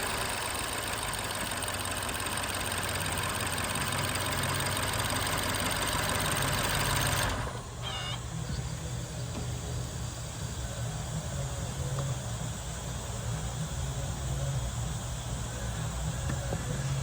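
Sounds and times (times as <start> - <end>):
misfiring engine idling: 0.0 - 17.0.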